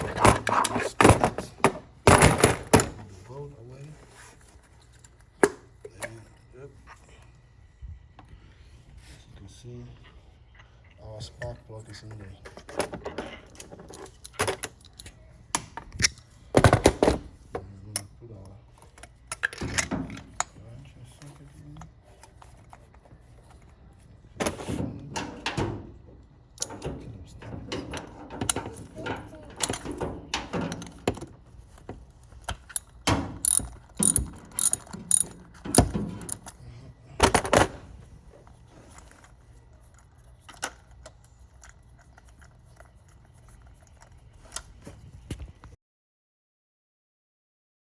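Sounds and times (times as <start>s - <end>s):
ratchet wrench clicking: 32.6s - 35.9s.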